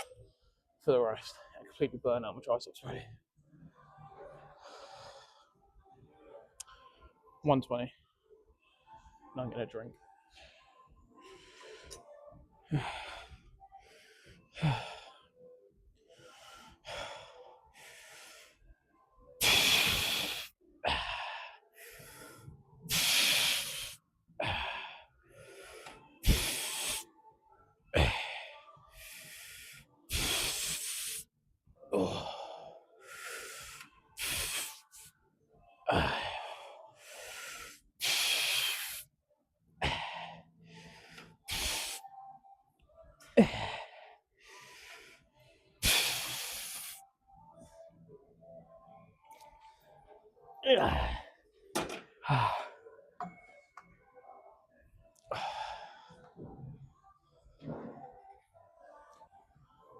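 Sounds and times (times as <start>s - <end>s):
man breathing hard: 16.1s - 18.7s, 19.4s - 27.1s, 28.0s - 31.3s, 31.9s - 35.1s, 35.9s - 39.1s, 39.8s - 42.0s, 43.4s - 47.0s, 55.2s - 56.4s.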